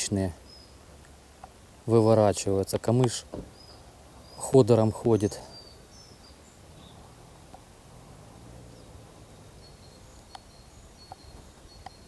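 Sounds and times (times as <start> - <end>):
faint outdoor ambience: 0.0 - 12.0
high bird chirps: 8.7 - 12.0.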